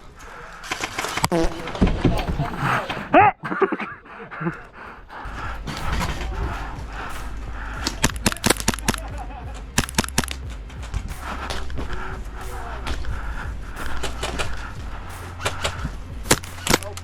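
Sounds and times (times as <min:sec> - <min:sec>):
low rumble: 0:05.2 - 0:17.0
airsoft guns firing: 0:06.9 - 0:10.4.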